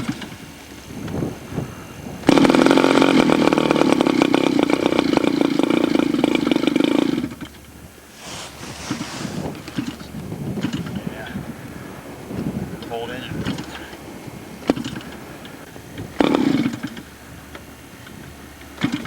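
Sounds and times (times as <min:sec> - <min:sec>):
small model engine running: 0:02.2 - 0:07.5, 0:16.2 - 0:17.0.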